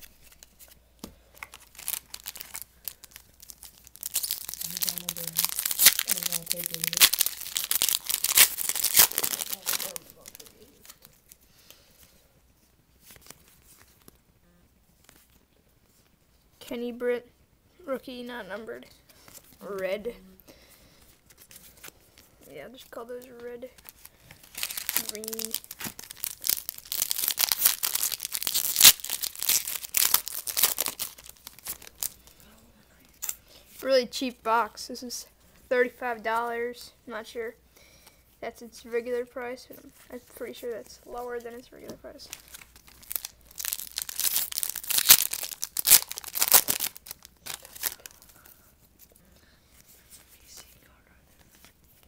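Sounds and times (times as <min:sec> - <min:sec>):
foil wrapper crinkling and tearing: 0:01.4 - 0:11.4, 0:23.8 - 0:32.4, 0:42.2 - 0:48.7.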